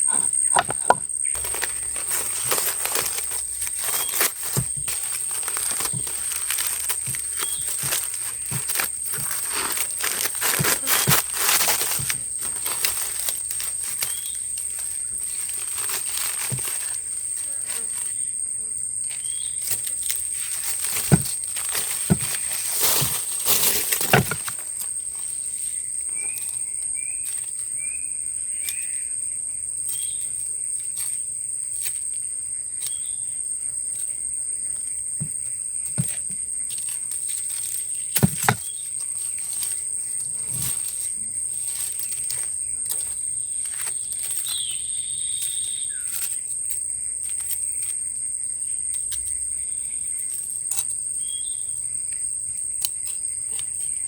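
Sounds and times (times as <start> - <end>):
sharp knocks and rustles: 0.0 - 18.1, 19.1 - 26.6, 34.0 - 44.8
high-pitched insect drone: 0.0 - 54.0.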